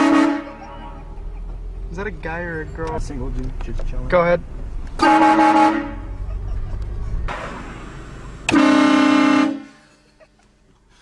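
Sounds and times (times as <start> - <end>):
multi-note train horn chord: 0.0 - 0.4, 8.5 - 9.8.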